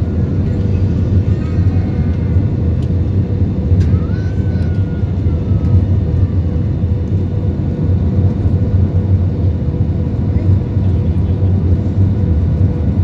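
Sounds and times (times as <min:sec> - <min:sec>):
jet airliner cabin rumble: 0:00.0 - 0:13.0.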